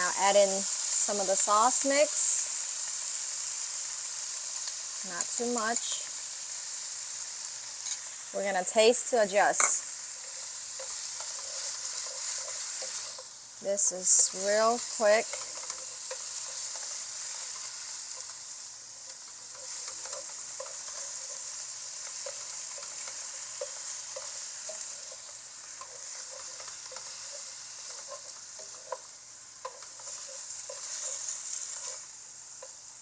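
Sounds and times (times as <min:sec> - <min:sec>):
vegetables sizzling in oil: 0:00.0 - 0:33.0
utensil tapping and scraping pan: 0:09.5 - 0:13.3, 0:14.3 - 0:18.4, 0:19.0 - 0:32.8.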